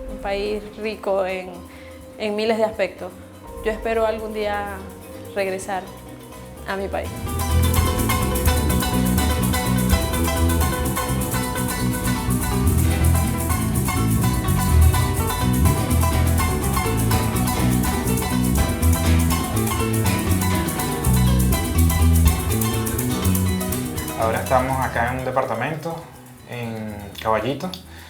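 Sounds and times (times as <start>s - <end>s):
fast shaker rhythm: 0.0s - 28.0s
plucked strings: 0.0s - 28.0s
bass line: 6.5s - 25.4s.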